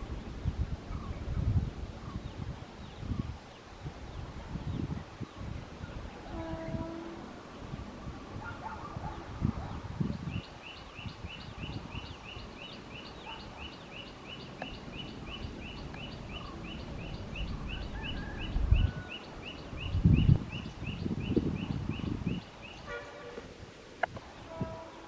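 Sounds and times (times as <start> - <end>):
rapid chirping call: 10.3 - 22.9.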